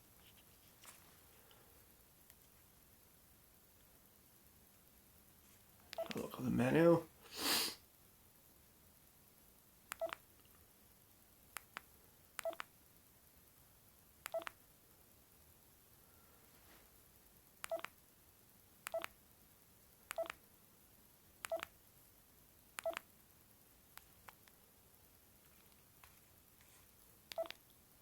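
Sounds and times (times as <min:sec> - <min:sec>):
mobile phone keypad beeps: 0:10.0 - 0:10.2, 0:12.4 - 0:12.7, 0:14.3 - 0:14.6, 0:17.7 - 0:17.9, 0:18.9 - 0:19.2, 0:20.1 - 0:20.4, 0:21.5 - 0:21.7, 0:22.8 - 0:23.1, 0:27.3 - 0:27.6.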